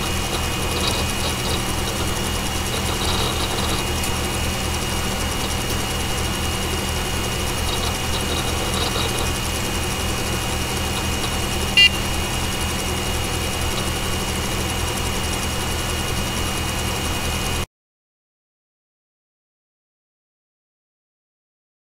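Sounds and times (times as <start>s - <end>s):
computer fans humming: 0.0s - 17.6s
short computer beep: 11.8s - 12.1s.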